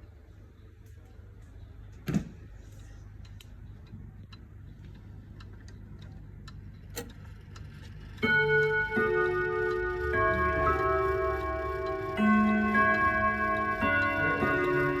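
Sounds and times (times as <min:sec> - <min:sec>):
clock ticking: 0:03.2 - 0:15.0
clock chime ringing: 0:08.2 - 0:15.0.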